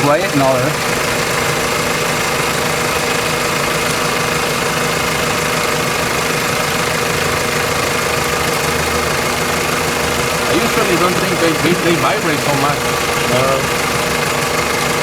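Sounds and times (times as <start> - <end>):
car engine idling: 0.0 - 15.0.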